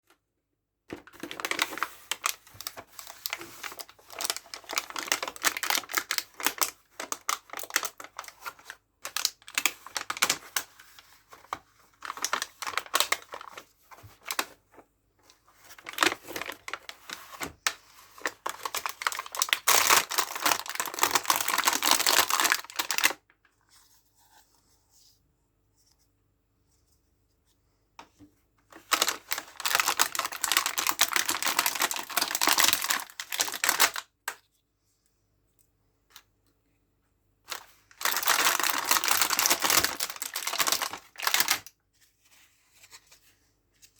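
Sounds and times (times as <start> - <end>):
plastic packaging crinkling: 0.9 - 14.6, 15.6 - 23.3, 28.7 - 34.1, 37.5 - 41.8.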